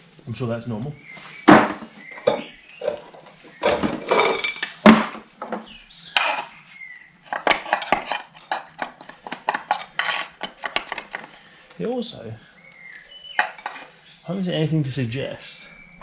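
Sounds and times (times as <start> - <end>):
metal tools clinking and knocking: 1.5 - 6.4, 7.3 - 11.4, 13.4 - 13.9.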